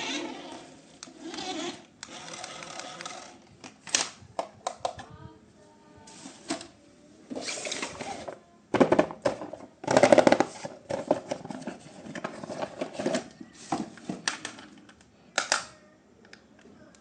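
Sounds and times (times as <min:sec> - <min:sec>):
plastic toys clattering and clicking: 0:07.4 - 0:15.7.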